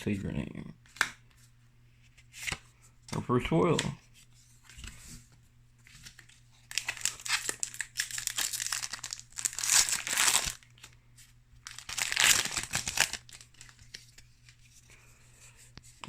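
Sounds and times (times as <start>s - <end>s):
foil wrapper crinkling: 6.6s - 10.6s, 11.6s - 13.9s.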